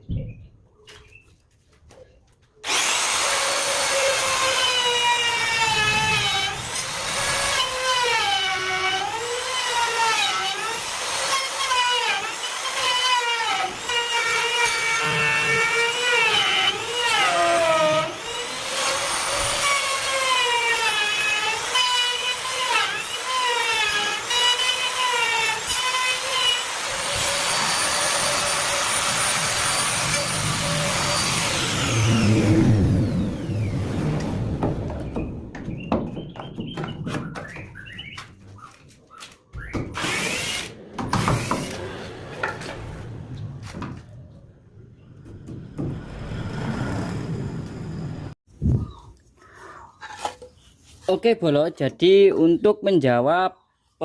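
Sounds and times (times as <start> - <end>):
electric power tool cutting wood: 2.6 - 34.9, 39.9 - 43.2.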